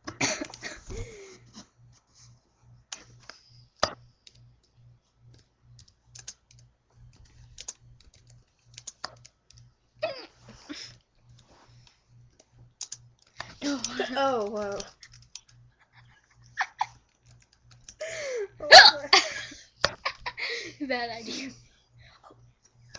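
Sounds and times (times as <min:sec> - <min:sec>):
typing on computer keyboard: 0:05.3 - 0:09.7, 0:12.4 - 0:13.5, 0:14.4 - 0:15.6, 0:17.0 - 0:18.0.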